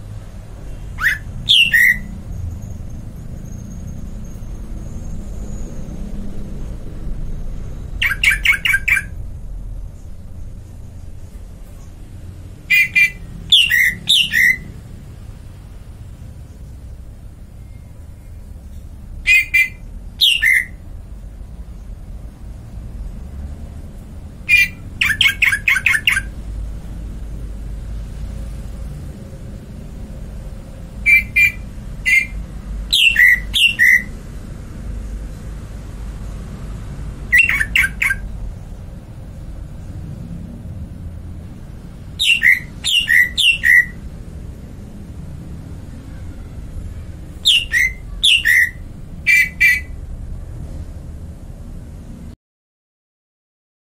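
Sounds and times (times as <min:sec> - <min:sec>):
steady low rumble: 0:00.0 - 0:52.4
bird squawks: 0:00.8 - 0:02.2, 0:08.0 - 0:09.2, 0:12.6 - 0:14.8, 0:19.2 - 0:20.8, 0:24.5 - 0:26.4, 0:31.0 - 0:34.2, 0:37.3 - 0:38.3, 0:42.2 - 0:44.0, 0:47.3 - 0:50.0.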